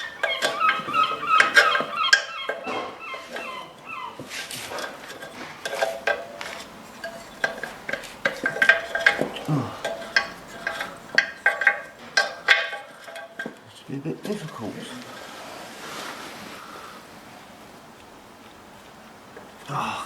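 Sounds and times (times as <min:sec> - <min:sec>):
metallic clinks on wheel rim: 0:00.0 - 0:15.2.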